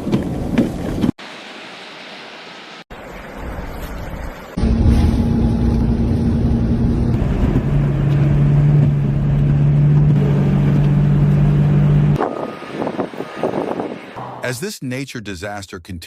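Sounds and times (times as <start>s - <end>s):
engine running steadily: 4.6s - 12.3s
low rumble: 4.6s - 12.6s.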